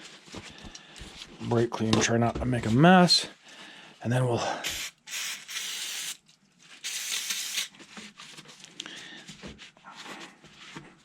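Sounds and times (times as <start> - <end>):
aerosol can spraying: 4.6 - 6.2, 6.8 - 7.7.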